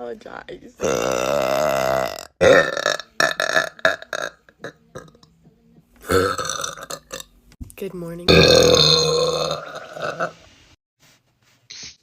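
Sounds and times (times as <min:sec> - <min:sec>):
woman burping: 0:00.8 - 0:05.2, 0:06.0 - 0:07.2, 0:08.3 - 0:10.4.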